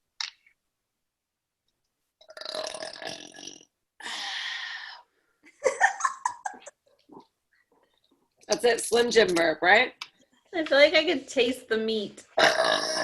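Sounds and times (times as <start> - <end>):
woman burping: 12.4 - 13.0.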